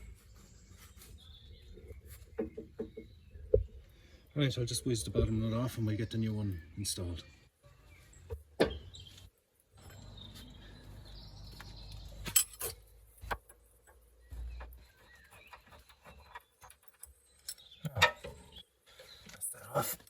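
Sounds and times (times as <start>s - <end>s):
metallic clinks and knocks: 12.2s - 12.8s.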